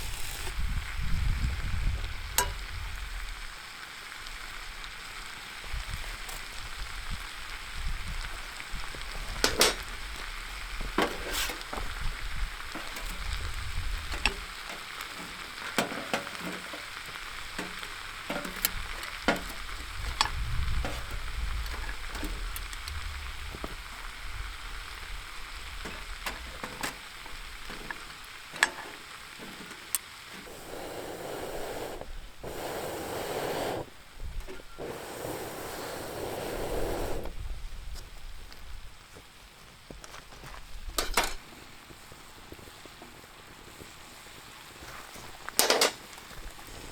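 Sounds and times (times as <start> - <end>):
sharp pops and crackles: 0.0 - 3.4, 7.6 - 38.7
food sizzling in a skillet: 0.0 - 38.6.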